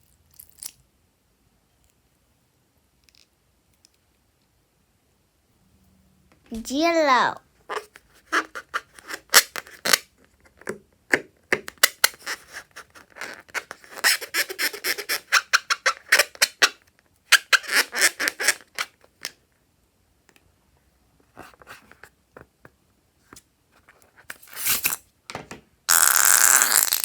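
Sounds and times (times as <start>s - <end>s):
slime crackling and popping: 25.9s - 27.0s.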